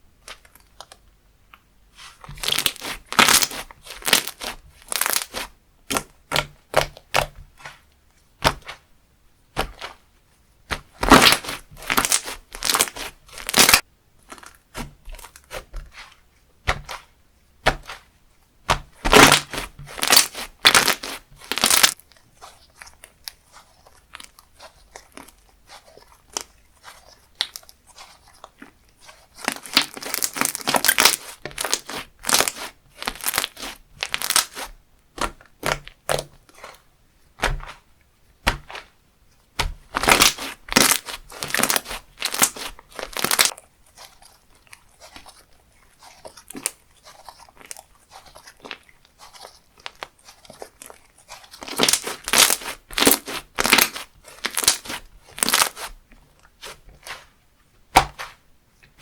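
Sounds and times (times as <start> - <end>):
slime squished crackling pops: 10.7 - 13.8, 18.7 - 22.0, 51.6 - 55.9.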